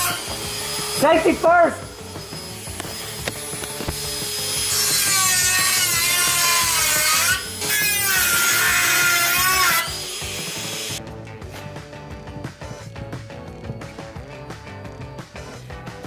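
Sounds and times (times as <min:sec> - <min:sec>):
power tool cutting metal: 0:00.0 - 0:11.0
background music: 0:00.0 - 0:16.0.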